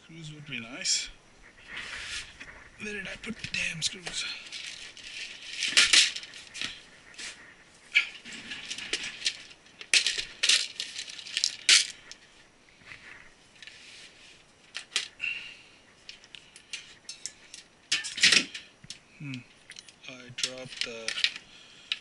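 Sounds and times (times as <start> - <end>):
small metal parts clinking and rattling: 3.5 - 6.8, 8.1 - 12.3, 14.6 - 15.2, 16.0 - 22.0.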